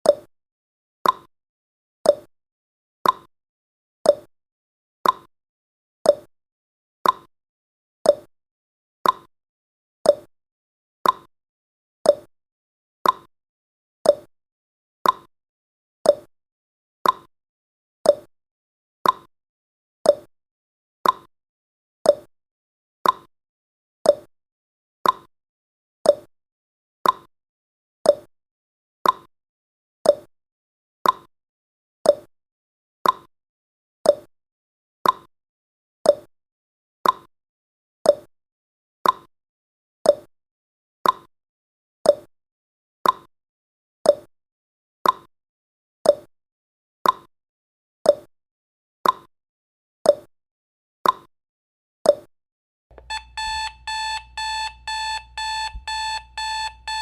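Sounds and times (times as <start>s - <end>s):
clock ticking: 52.9s - 57.0s
rapid-beeping alarm clock: 53.0s - 57.0s.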